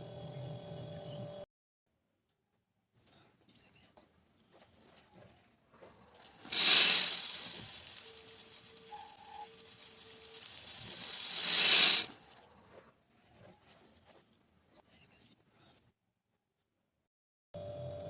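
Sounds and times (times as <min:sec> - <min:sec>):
beads pouring: 0:06.3 - 0:12.2.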